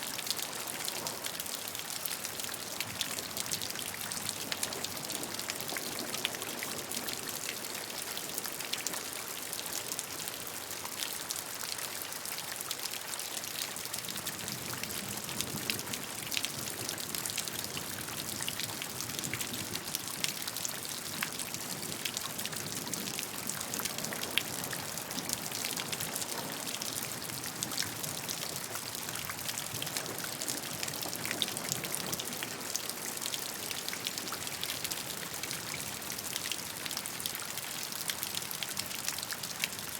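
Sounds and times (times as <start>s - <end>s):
rain drops pattering: 0.0s - 39.9s.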